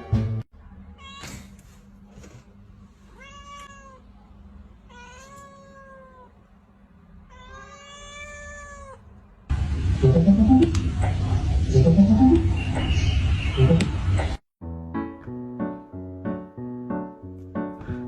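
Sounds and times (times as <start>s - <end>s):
cat meowing: 3.1s - 4.1s, 4.9s - 6.4s, 7.3s - 9.1s.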